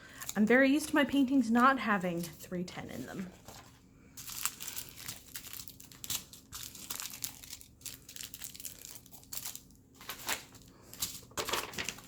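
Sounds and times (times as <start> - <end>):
plastic bags crinkling: 3.0 - 12.0.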